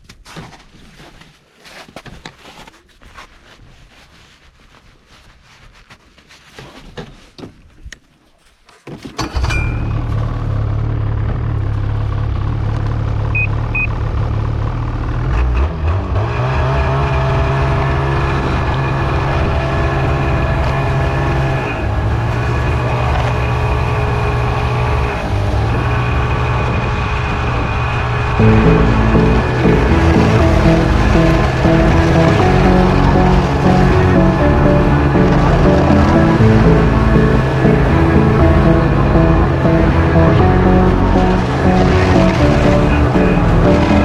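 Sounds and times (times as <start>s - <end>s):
snowmobile engine starting and running: 9.0s - 44.0s.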